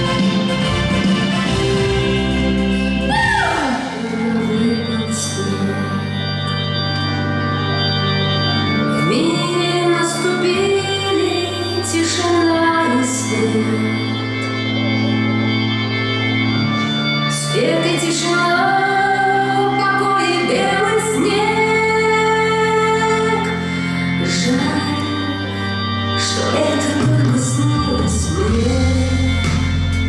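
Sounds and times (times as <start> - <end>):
sustained chords: 0.0 - 30.0
woman singing: 3.1 - 6.2, 9.0 - 14.2, 17.3 - 29.9.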